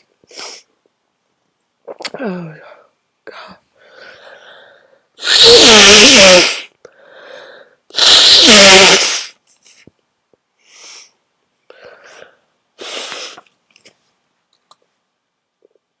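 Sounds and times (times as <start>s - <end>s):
person sneezing loudly: 5.2s - 6.7s, 7.9s - 9.4s.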